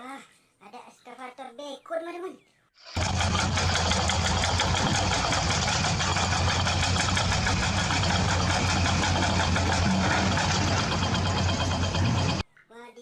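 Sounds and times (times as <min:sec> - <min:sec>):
motor humming with fast ticking: 0:02.9 - 0:12.4.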